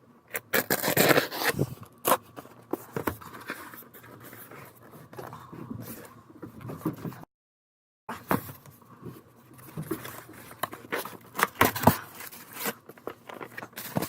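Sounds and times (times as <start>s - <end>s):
tape and cardboard tearing: 0.3s - 2.2s.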